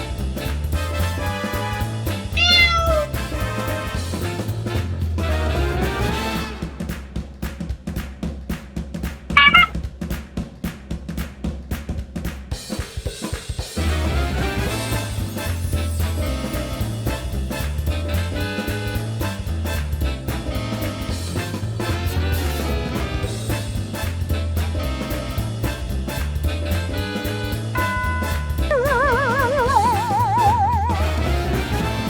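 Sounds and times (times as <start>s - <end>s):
upbeat swing music: 0.0s - 32.0s
wavering warbling tone: 9.4s - 9.7s, 27.8s - 31.1s.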